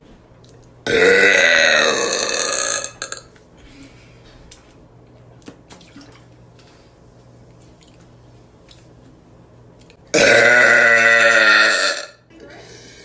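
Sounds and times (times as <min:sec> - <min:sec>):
low steady hum: 0:00.0 - 0:13.0
woman burping loudly: 0:00.8 - 0:03.3, 0:10.1 - 0:12.3.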